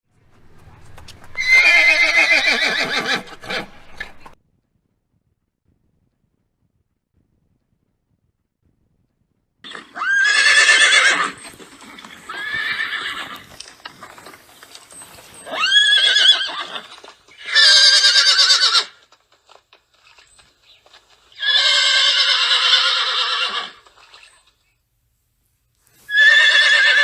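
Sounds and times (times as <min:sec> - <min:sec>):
horse whinnying: 0:01.3 - 0:04.4, 0:09.6 - 0:19.1, 0:21.3 - 0:24.4, 0:26.1 - 0:27.0.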